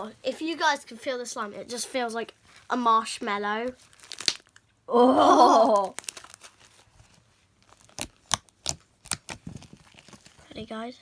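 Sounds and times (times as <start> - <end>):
slime crackling and popping: 3.7 - 4.7, 5.8 - 6.8, 7.6 - 10.4
girl exclaiming: 4.9 - 6.0.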